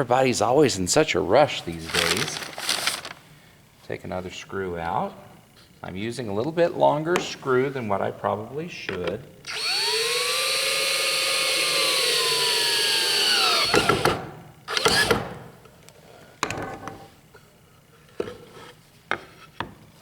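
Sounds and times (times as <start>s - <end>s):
cordless drill driving screw: 9.5s - 15.3s.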